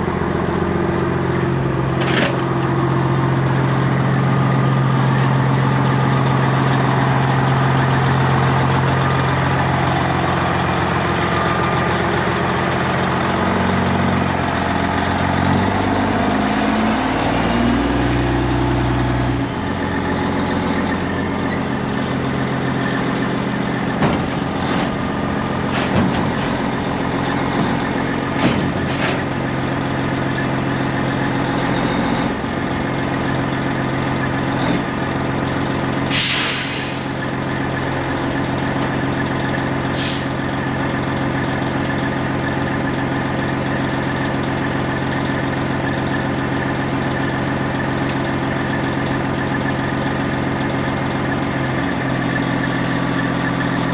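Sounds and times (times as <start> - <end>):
diesel truck engine idling: 0.0 - 53.9
air release hiss: 36.1 - 37.2, 39.9 - 40.4.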